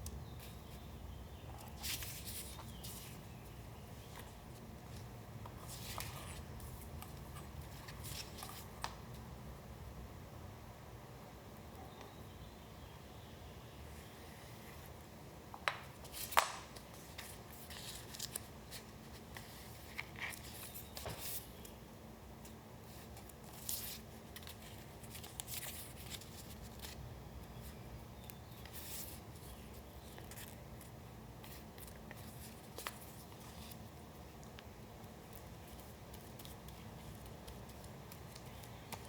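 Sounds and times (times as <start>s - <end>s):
paper rustling: 1.5s - 3.4s, 4.0s - 8.7s, 16.0s - 21.6s, 22.8s - 27.0s, 28.6s - 39.0s
light paper clicks: 34.4s - 39.0s.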